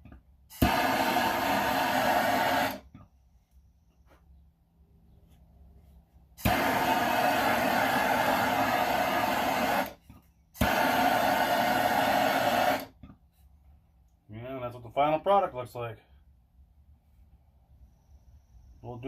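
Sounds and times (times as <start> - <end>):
torch flame hissing: 0.5 - 2.9, 6.4 - 10.0, 10.6 - 13.0.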